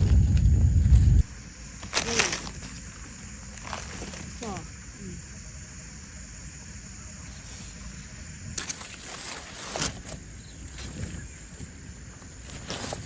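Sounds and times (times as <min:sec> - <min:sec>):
dry leaves rustling: 0:00.0 - 0:04.8, 0:08.6 - 0:13.0.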